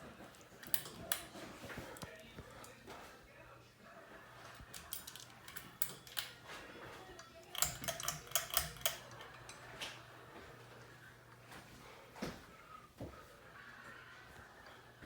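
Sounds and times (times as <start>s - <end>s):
ceiling fan humming: 0.0s - 15.0s
dishes and cutlery clatter: 0.5s - 2.7s, 4.4s - 10.1s.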